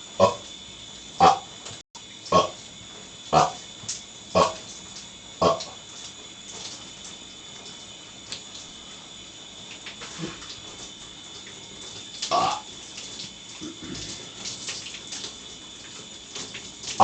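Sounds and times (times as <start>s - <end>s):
shower water running: 0.0s - 17.0s
person burping: 0.2s - 0.4s, 1.2s - 1.4s, 5.4s - 5.7s, 12.3s - 12.6s, 13.6s - 14.1s.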